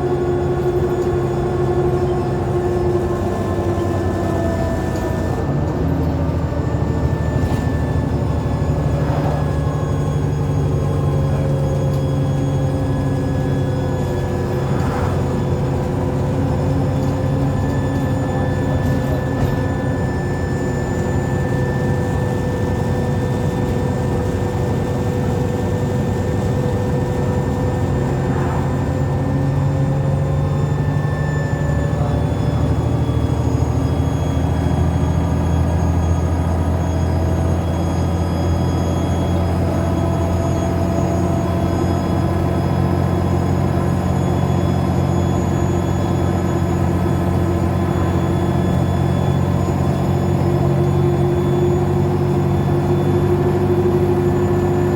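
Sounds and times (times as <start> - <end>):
bus engine drone: 0.0 - 54.9
differential whine: 0.0 - 54.9
turbocharger whistle: 24.3 - 54.9.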